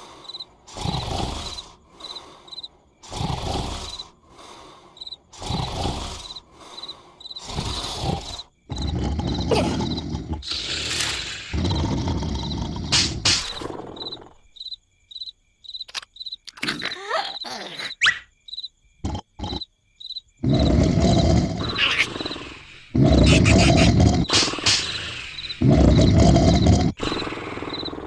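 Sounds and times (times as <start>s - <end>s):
cartoon crickets chirping: 0.0s - 28.0s
loud snoring: 0.7s - 1.8s, 3.0s - 4.2s, 5.3s - 6.5s, 7.4s - 14.2s, 20.4s - 28.0s.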